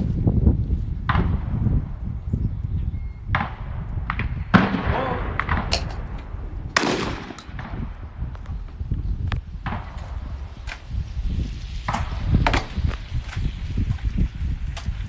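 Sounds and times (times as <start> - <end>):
wind rumble on microphone: 0.0 - 15.0
shotgun reports: 4.5 - 7.9.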